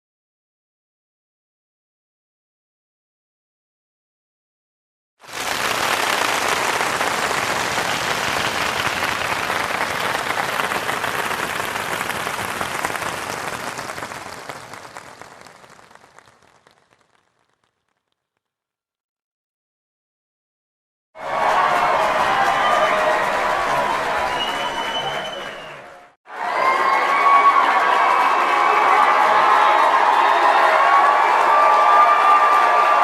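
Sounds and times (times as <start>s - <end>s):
audience applause: 5.2s - 18.0s, 21.2s - 33.0s.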